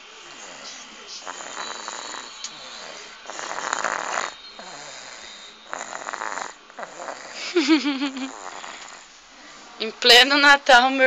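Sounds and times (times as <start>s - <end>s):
person snoring: 0.2s - 9.1s.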